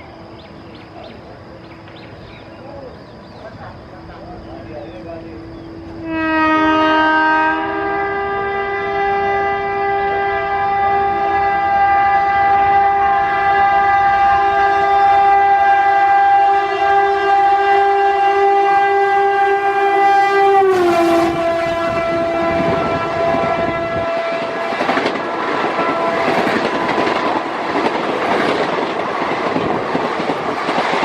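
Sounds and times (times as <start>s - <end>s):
rush of passing train: 0.0s - 31.0s
locomotive horn blast: 5.9s - 27.4s.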